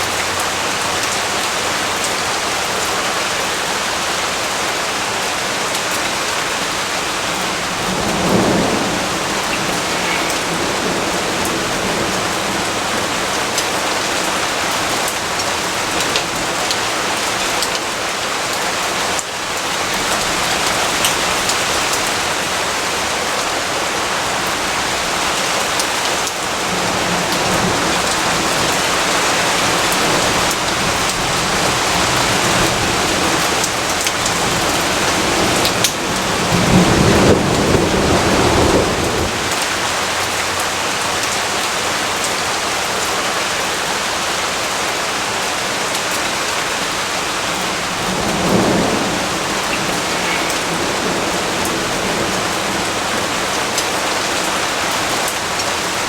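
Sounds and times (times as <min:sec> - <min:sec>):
rain hissing: 0:00.0 - 0:56.0
thunder rumbling: 0:06.4 - 0:18.0, 0:19.0 - 0:40.6, 0:46.6 - 0:55.9.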